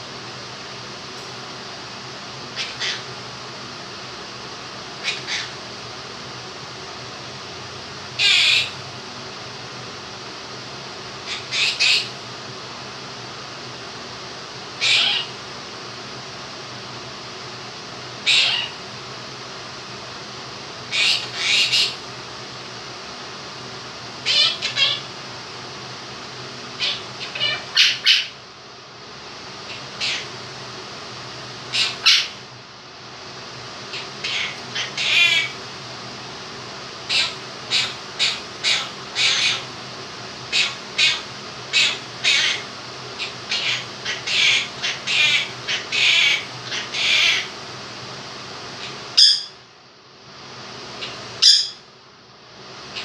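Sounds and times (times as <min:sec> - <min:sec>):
electric fan humming: 0:00.0 - 0:53.0
parrot squawking and chirping: 0:02.6 - 0:03.1, 0:05.0 - 0:05.6, 0:08.2 - 0:08.8, 0:11.2 - 0:12.2, 0:14.8 - 0:15.3, 0:18.2 - 0:18.8, 0:20.9 - 0:22.0, 0:24.2 - 0:25.1, 0:26.8 - 0:28.4, 0:29.7 - 0:30.4, 0:31.7 - 0:32.4, 0:33.9 - 0:35.6, 0:37.1 - 0:39.7, 0:40.5 - 0:47.5, 0:48.8 - 0:49.6, 0:51.0 - 0:51.8.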